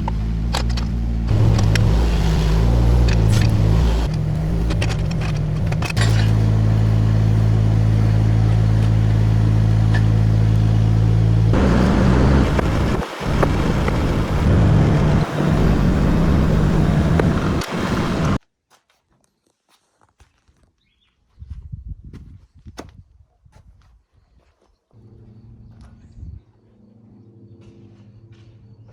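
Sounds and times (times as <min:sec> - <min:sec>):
excavator engine running: 0:00.0 - 0:18.4.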